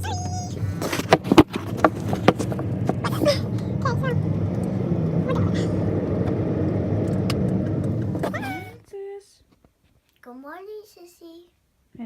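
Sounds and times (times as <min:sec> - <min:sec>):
car engine and road noise: 0:00.0 - 0:08.8.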